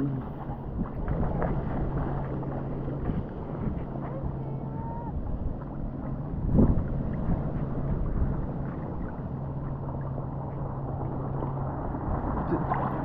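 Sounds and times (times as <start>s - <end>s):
boat motor humming: 0.0s - 13.0s
water noise: 0.0s - 13.0s
wind: 0.0s - 13.0s.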